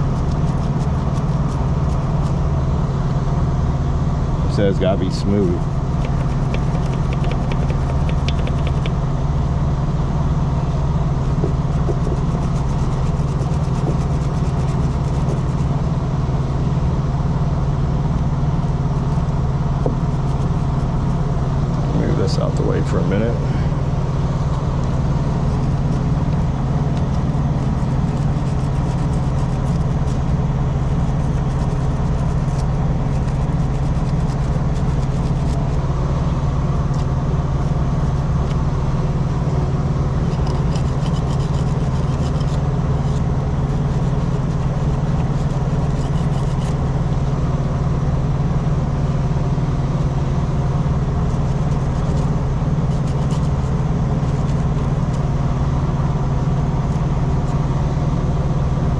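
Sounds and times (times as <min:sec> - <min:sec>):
truck engine idling: 0:00.0 - 0:41.1
clicks and scrapes of hand work: 0:06.0 - 0:09.0, 0:40.2 - 0:46.8.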